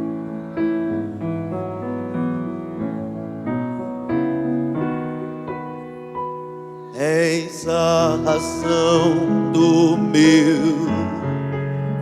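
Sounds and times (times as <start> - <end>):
keyboard playing soft chords: 0.0 - 12.0.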